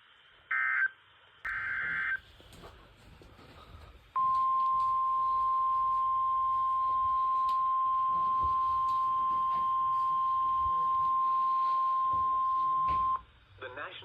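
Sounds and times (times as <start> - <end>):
steady alarm tone: 1.5 - 2.2, 4.2 - 13.2.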